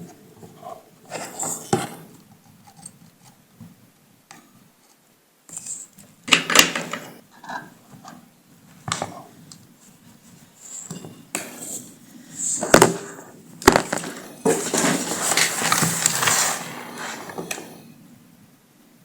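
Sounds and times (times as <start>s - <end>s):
scraping and rattling: 10.7s - 17.6s.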